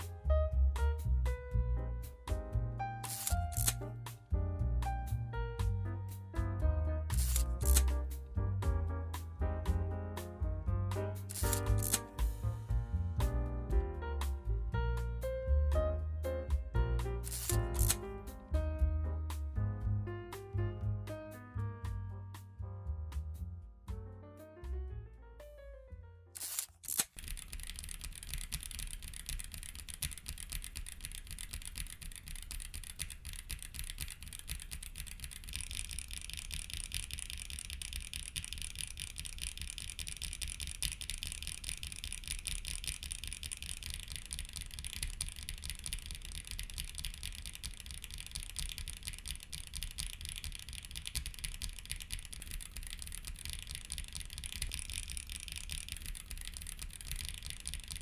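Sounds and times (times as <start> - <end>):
mechanical keyboard typing: 3.0 - 4.0, 7.1 - 8.2, 11.2 - 12.4, 17.1 - 18.4, 26.4 - 58.0.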